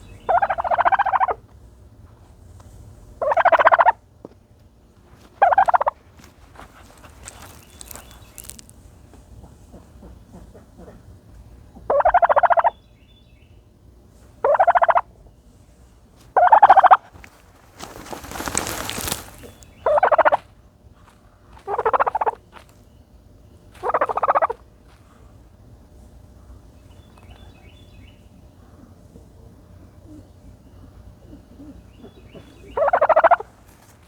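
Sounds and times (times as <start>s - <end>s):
turkey rattling calls: 0.0s - 1.4s, 3.2s - 4.0s, 5.4s - 6.0s, 6.7s - 8.8s, 11.7s - 12.8s, 14.4s - 15.1s, 16.4s - 20.5s, 21.6s - 22.4s, 23.8s - 24.6s, 31.2s - 33.8s
scratchy rustle: 6.0s - 8.8s, 17.2s - 19.7s.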